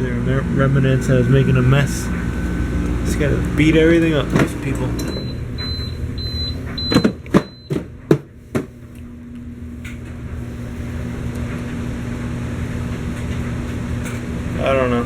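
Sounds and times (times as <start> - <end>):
low steady tone: 0.0 - 6.9
dehumidifier humming: 0.0 - 15.0.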